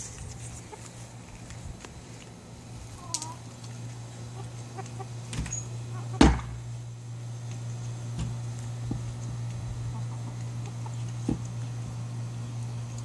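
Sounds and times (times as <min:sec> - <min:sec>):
chickens clucking softly: 0:09.8 - 0:11.2.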